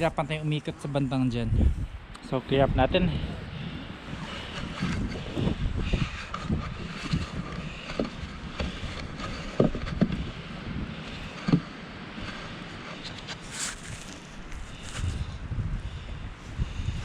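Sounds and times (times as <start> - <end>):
low wind rumble on microphone: 0.0 - 17.0
snow shovel scraping on driveway: 13.4 - 15.1.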